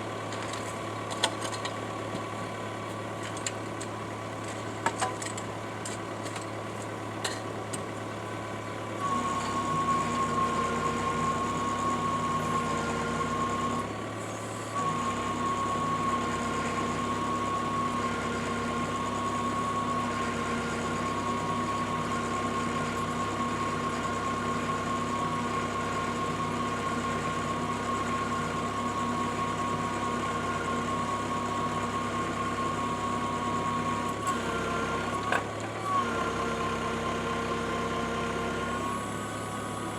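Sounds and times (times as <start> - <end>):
earth auger running: 9.0 - 13.9, 14.8 - 39.9.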